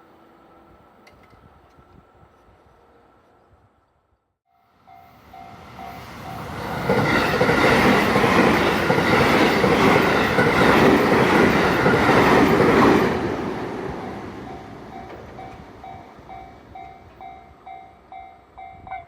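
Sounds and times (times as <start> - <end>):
crossing warning bell dinging: 4.5 - 12.9, 14.0 - 19.0
electric train running noise: 4.8 - 18.9.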